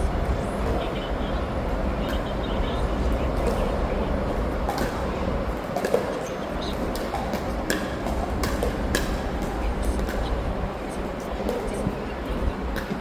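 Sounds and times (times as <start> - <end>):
paddles striking pickleball: 6.9 - 10.3.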